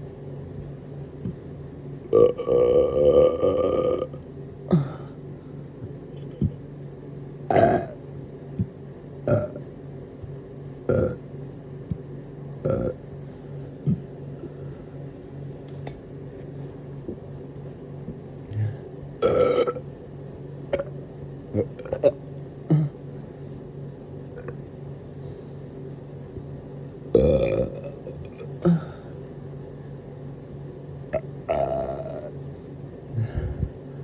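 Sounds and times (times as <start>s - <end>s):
person burping: 2.1s - 5.1s, 7.5s - 8.0s, 9.3s - 9.6s, 10.9s - 11.2s, 12.7s - 13.0s, 18.5s - 19.8s, 20.7s - 20.9s, 21.6s - 23.0s, 27.2s - 29.0s, 31.2s - 32.3s.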